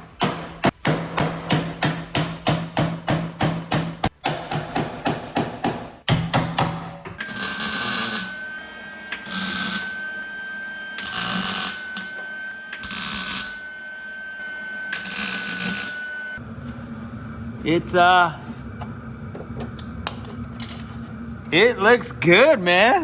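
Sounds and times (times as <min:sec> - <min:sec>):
hammer striking sheet steel: 0:00.2 - 0:08.4
steady high whine: 0:07.2 - 0:23.0
welder crackling bursts: 0:09.1 - 0:09.9, 0:11.0 - 0:11.8, 0:12.7 - 0:13.5, 0:14.9 - 0:16.0.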